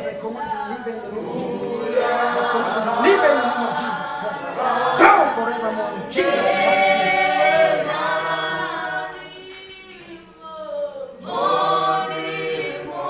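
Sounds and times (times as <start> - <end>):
group singing unaccompanied: 0.0 - 13.0.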